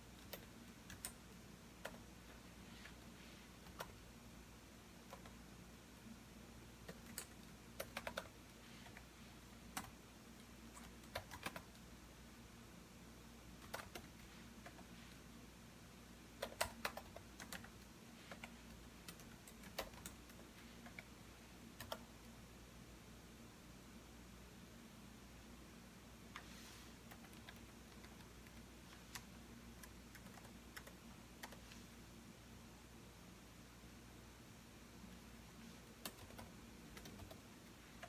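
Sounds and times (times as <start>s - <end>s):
faint steady hum: 0.0s - 38.0s
computer keyboard typing: 0.1s - 2.1s, 3.6s - 4.0s, 5.0s - 5.4s, 6.8s - 9.1s, 9.7s - 10.0s, 10.7s - 11.8s, 13.6s - 14.9s, 16.4s - 21.1s, 21.8s - 22.2s, 27.1s - 31.7s, 36.0s - 38.0s.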